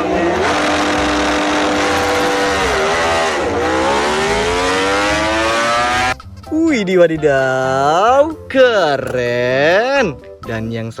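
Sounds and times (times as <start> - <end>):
racing motorcycle engine revving: 0.0 - 6.2.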